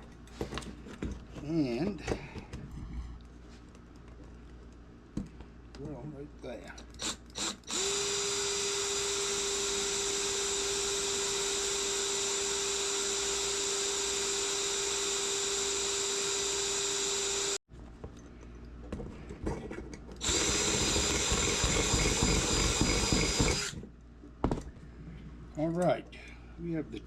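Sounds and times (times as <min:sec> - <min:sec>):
electric drill grinding metal: 0:07.0 - 0:17.6, 0:20.2 - 0:23.8.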